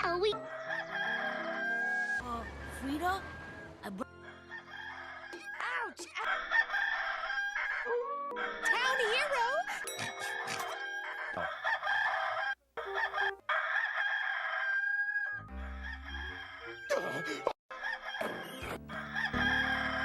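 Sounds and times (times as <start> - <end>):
music: 0.0 - 2.2, 15.4 - 17.5, 18.2 - 20.0
rooster crowing: 0.4 - 5.6, 6.2 - 8.9, 9.6 - 20.0.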